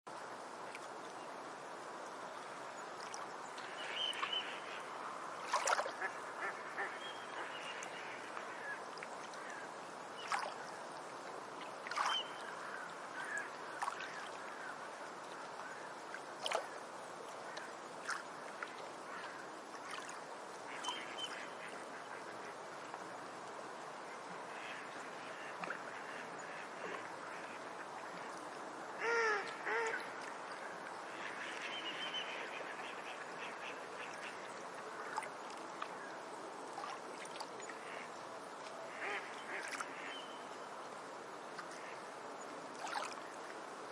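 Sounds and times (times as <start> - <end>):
surf washing: 2.4 - 9.6.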